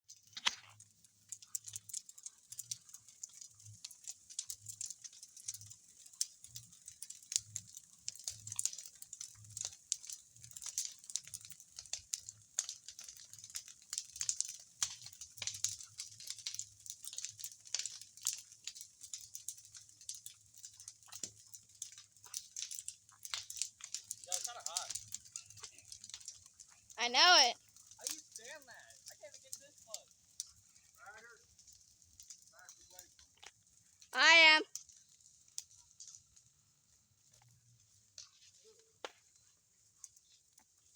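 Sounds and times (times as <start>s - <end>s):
bonfire crackling and popping: 0.0s - 40.9s.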